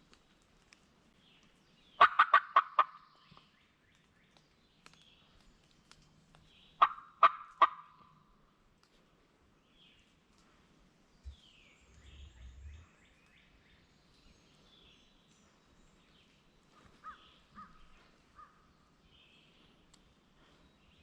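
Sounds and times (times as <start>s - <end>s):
turkey gobbling: 2.0s - 3.0s, 6.8s - 8.1s.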